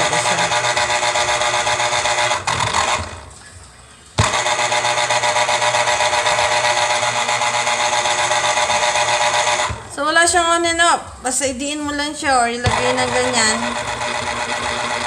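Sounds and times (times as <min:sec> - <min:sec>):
electric juicer motor running: 0:00.0 - 0:03.4, 0:04.2 - 0:10.0, 0:12.6 - 0:15.0.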